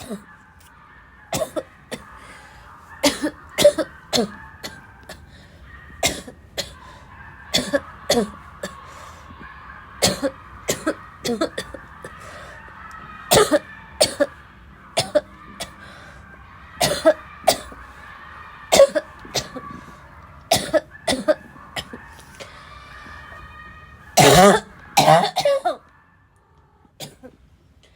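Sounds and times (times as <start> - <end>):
person coughing harshly: 0.0 - 0.2, 1.3 - 2.1, 3.0 - 5.2, 6.0 - 6.9, 7.5 - 8.8, 10.0 - 12.2, 13.3 - 14.3, 15.0 - 15.2, 16.8 - 17.7, 18.7 - 19.6, 20.5 - 22.0, 24.2 - 25.8.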